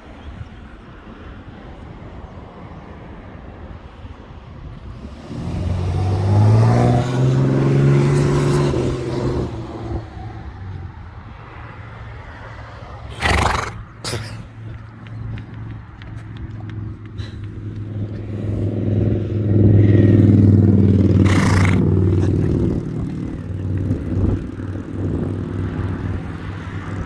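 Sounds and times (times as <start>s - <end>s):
vehicle passing by: 4.3s - 27.0s
horse sneezing: 13.1s - 14.6s, 21.2s - 22.4s.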